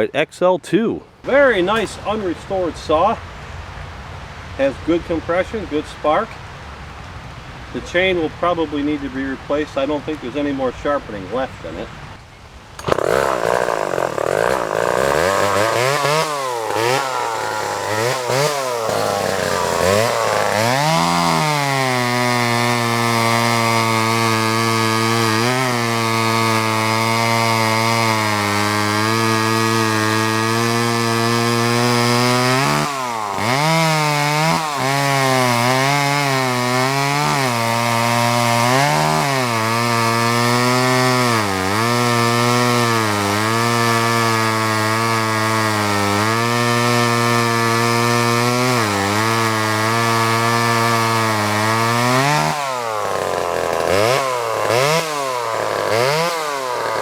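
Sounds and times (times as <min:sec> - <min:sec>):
chainsaw running: 0:01.2 - 0:02.6, 0:12.8 - 0:57.0.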